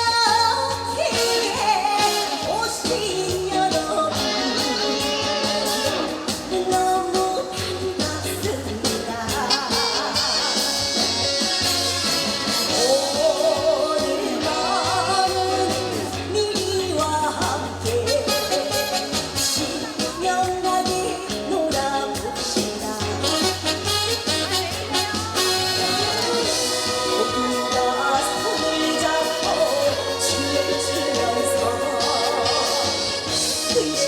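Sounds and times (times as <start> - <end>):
trot music with bass beat: 0.0 - 34.0.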